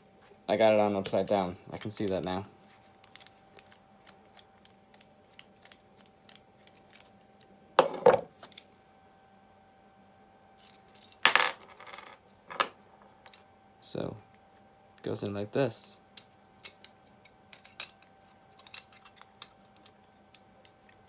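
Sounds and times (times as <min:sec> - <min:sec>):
metal parts clinking: 0:18.6 - 0:20.0.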